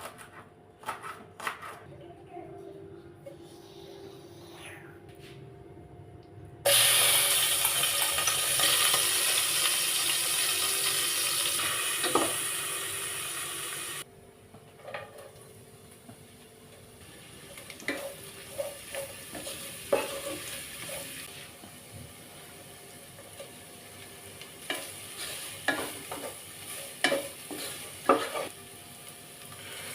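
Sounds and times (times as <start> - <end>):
food sizzling in hot oil: 6.7 - 14.0, 17.0 - 21.6, 22.4 - 29.9.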